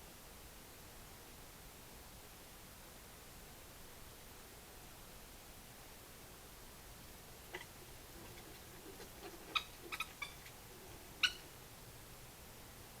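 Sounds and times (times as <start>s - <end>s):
badger squeaking: 7.6s - 11.5s.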